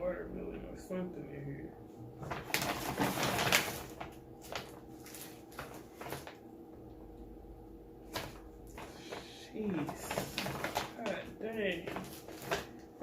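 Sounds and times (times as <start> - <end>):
candy packaging rustling: 2.2 - 6.4, 8.0 - 13.0.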